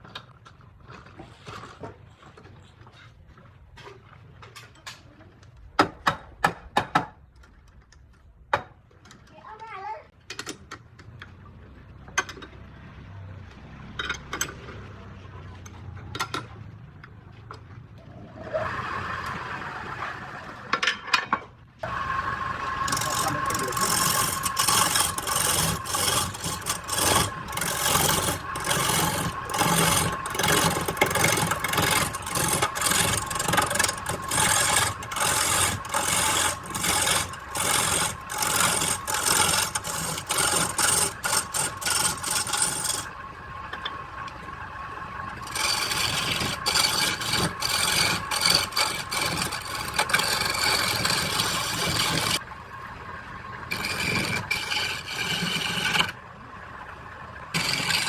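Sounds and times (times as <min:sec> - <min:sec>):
tool scraping spinning wood: 0:21.8 - 0:52.8, 0:53.6 - 0:56.2, 0:57.5 - 0:58.0
lathe motor hum: 0:21.8 - 0:58.0.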